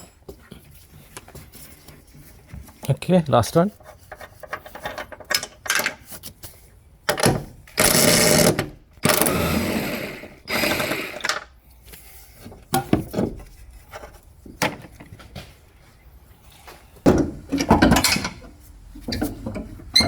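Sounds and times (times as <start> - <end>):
power tool undoing bolt: 7.1 - 11.5.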